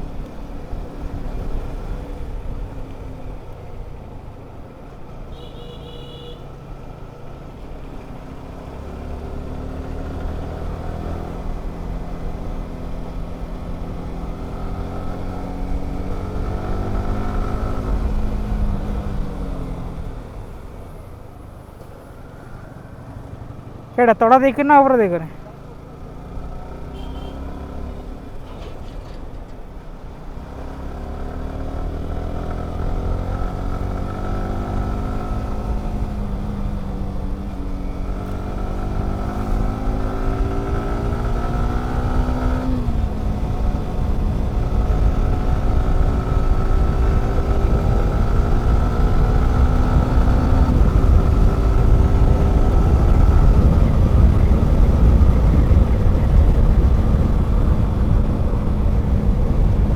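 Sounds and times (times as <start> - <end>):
motorcycle engine accelerating: 7.8 - 20.9, 30.2 - 59.9.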